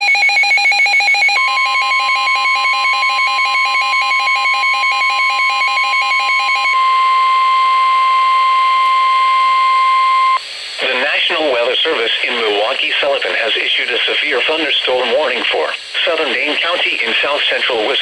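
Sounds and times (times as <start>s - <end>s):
steady warning alarm tone: 0.0s - 7.6s.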